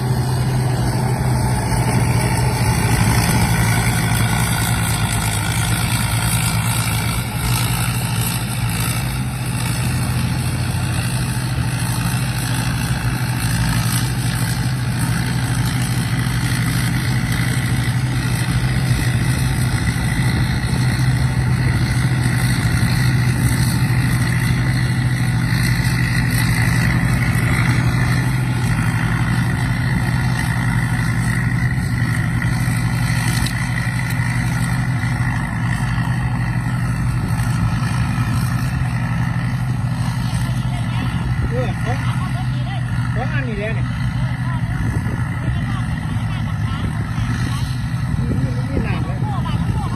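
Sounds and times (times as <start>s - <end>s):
harvester engine drone: 0.0s - 49.9s.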